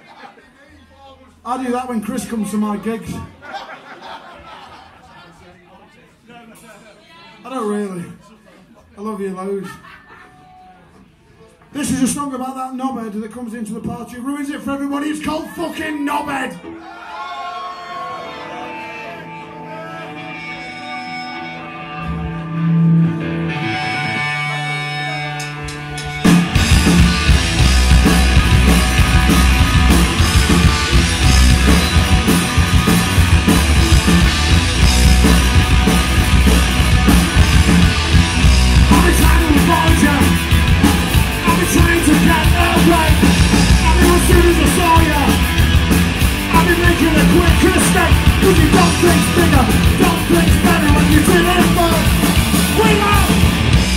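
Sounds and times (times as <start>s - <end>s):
punk rock band playing: 17.7s - 53.9s.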